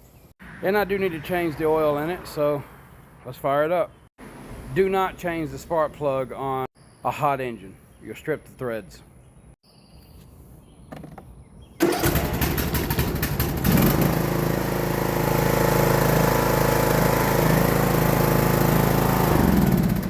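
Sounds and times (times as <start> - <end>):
electric starter cranking: 11.8 - 20.0
mower engine running: 11.8 - 20.0.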